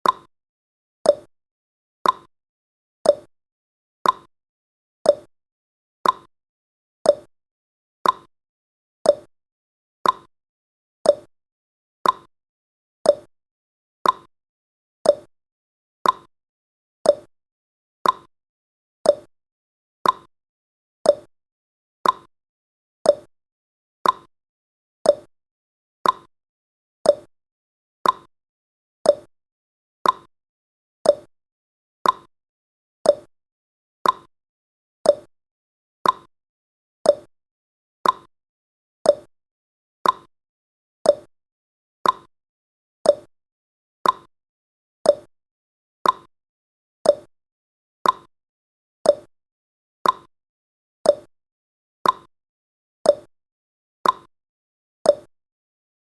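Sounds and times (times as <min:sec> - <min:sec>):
countdown timer ticking: 0:33.1 - 0:33.3, 0:35.1 - 0:35.3, 0:37.1 - 0:37.3, 0:39.1 - 0:39.3, 0:41.1 - 0:41.3, 0:43.1 - 0:43.3, 0:45.1 - 0:45.3, 0:47.1 - 0:47.3.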